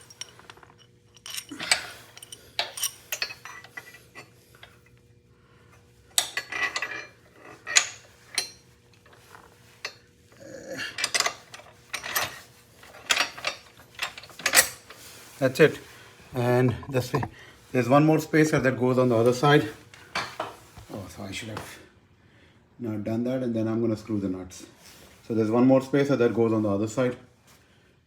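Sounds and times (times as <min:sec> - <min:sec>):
metal tools clinking on metal: 0:00.0 - 0:04.3, 0:11.0 - 0:15.7.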